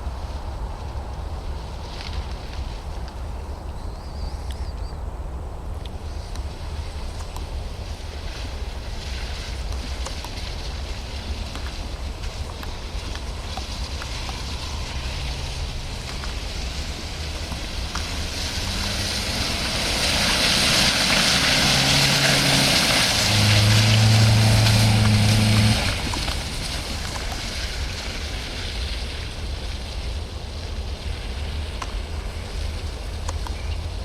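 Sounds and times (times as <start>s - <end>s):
tyres churning mud: 7.5s - 34.0s
car engine revving: 9.0s - 28.8s.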